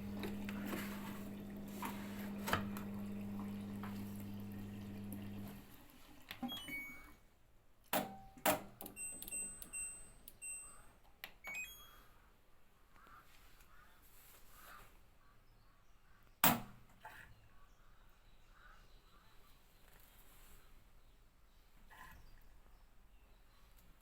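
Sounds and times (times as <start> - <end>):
washing machine humming: 0.0 - 7.2
short electronic beeps: 6.4 - 7.2.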